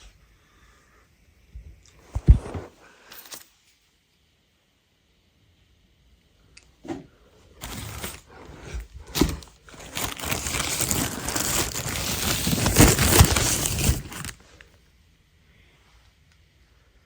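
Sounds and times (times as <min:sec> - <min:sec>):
packaging crinkling and rustling: 0:07.6 - 0:14.6.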